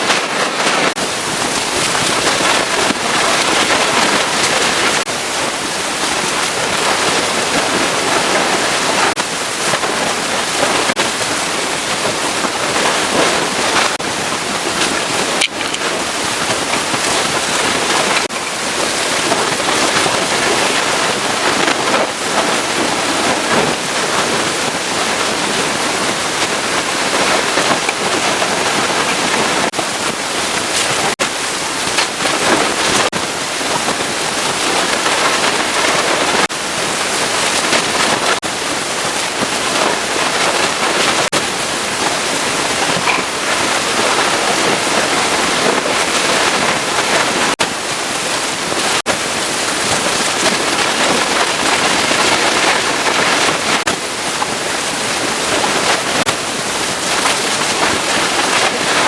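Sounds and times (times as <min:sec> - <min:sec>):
pressure washer spraying water: 0:00.0 - 0:33.1.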